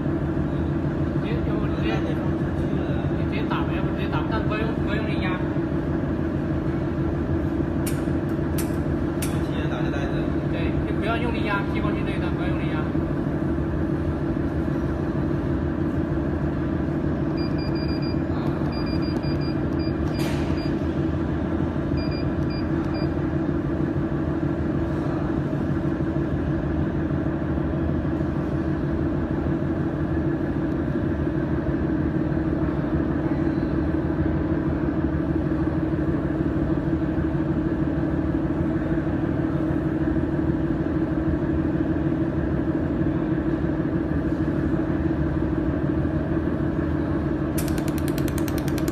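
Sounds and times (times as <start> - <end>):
sharp click: 7.8 - 9.5, 47.6 - 48.9
welding machine humming: 47.5 - 48.9.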